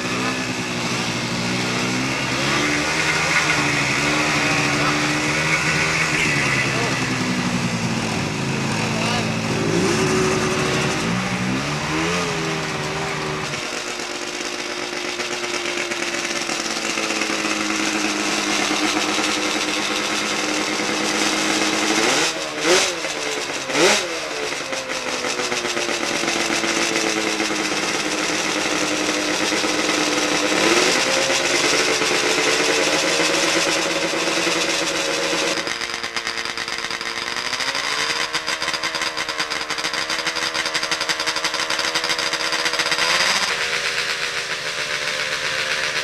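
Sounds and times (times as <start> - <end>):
snowmobile engines idling: 0.0 - 46.0.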